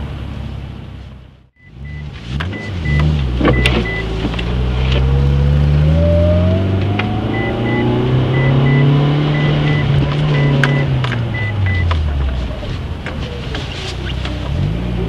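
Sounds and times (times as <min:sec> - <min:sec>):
car engine accelerating with whine: 0:01.6 - 0:15.0
sharp clicks and knocks: 0:09.7 - 0:14.6.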